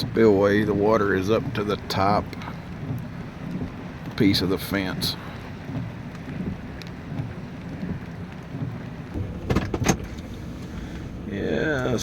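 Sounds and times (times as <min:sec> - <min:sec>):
floodwater rushing over spillway: 0:00.0 - 0:12.0
sharp knocks: 0:09.1 - 0:11.1.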